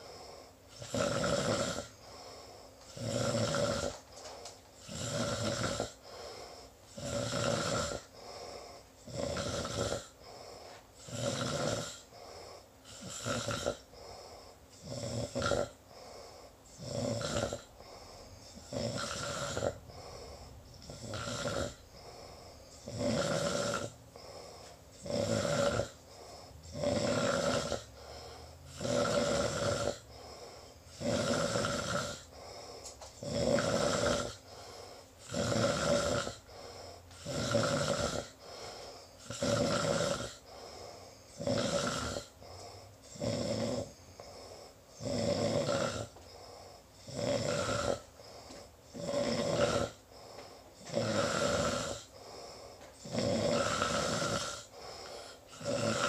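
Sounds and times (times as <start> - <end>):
soft breathing: 0.0 - 0.8, 1.8 - 3.0, 3.9 - 5.2, 5.9 - 7.0, 8.0 - 9.1, 10.1 - 11.2, 12.0 - 13.2, 13.8 - 14.8, 15.8 - 16.8, 17.5 - 22.9, 23.6 - 25.0, 25.9 - 26.8, 27.8 - 28.8, 30.0 - 31.0, 32.2 - 33.2, 34.3 - 35.3, 36.3 - 37.3, 38.2 - 39.5, 40.3 - 41.5, 42.2 - 43.2, 43.8 - 45.0, 46.0 - 47.1, 47.9 - 49.0, 49.8 - 51.0, 51.9 - 56.0
person snoring: 0.0 - 56.0.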